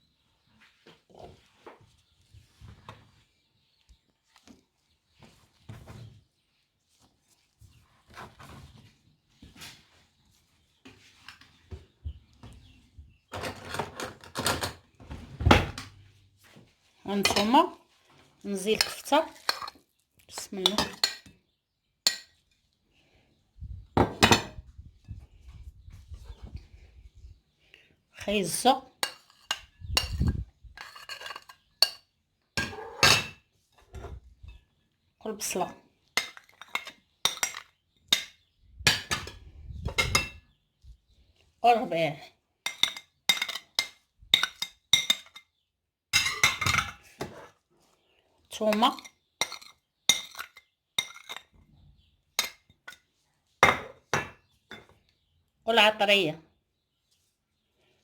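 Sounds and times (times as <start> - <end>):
utensils and dishes clattering: 13.3 - 14.8, 18.7 - 19.8, 29.0 - 32.0, 32.6 - 33.4, 36.2 - 40.4, 42.7 - 45.4, 46.2 - 47.4, 48.8 - 51.5
cutlery clinking against bowl: 18.8 - 19.8, 29.0 - 32.0, 36.2 - 39.4, 42.7 - 45.4, 46.2 - 47.0, 48.7 - 51.5.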